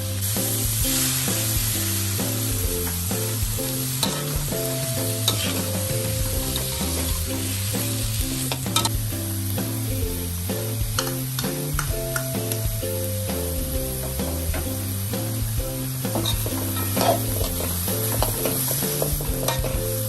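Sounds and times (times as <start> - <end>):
background music: 0.0 - 20.0
food sizzling in a pan: 0.0 - 20.0
utensil scraping a pan: 16.1 - 19.9.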